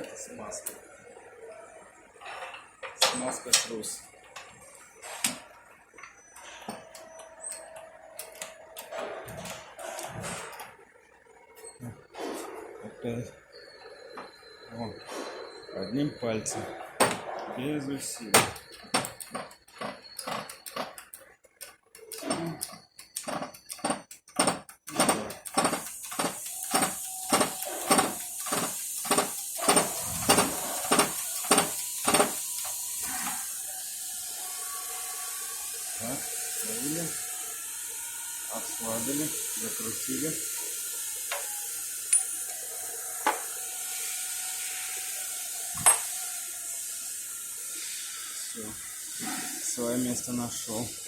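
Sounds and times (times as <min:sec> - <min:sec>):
sharp metal clicks: 0:18.4 - 0:32.7
hydraulic press hiss: 0:24.4 - 0:51.0.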